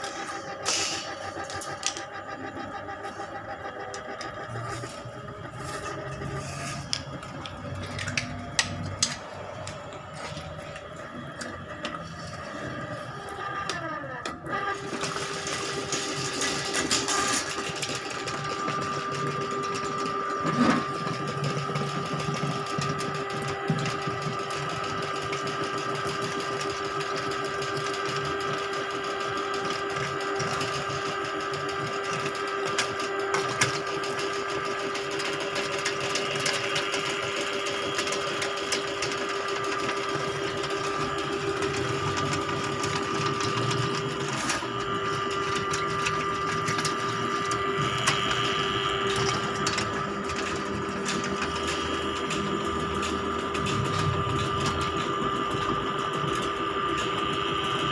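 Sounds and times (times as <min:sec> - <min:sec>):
drain-cleaning machine motor hum: 0:00.0 - 0:57.9.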